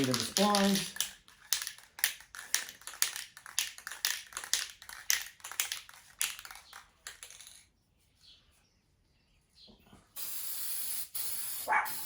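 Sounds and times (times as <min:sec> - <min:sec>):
spray paint can rattling: 0:00.0 - 0:07.7, 0:10.2 - 0:12.0.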